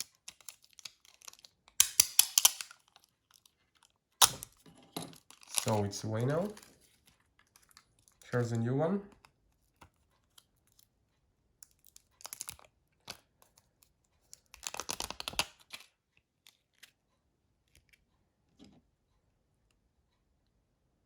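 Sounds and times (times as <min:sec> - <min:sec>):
adhesive sheet crinkling and peeling: 0:00.0 - 0:04.6, 0:05.2 - 0:08.2, 0:14.5 - 0:15.8.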